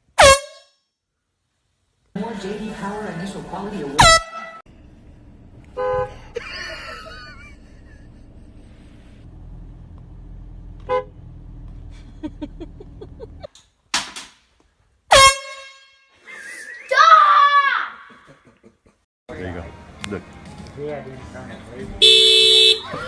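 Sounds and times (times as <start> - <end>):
air horn blasts: 0.2 - 0.7, 4.0 - 4.7, 5.7 - 6.2, 15.1 - 16.2, 22.0 - 23.0.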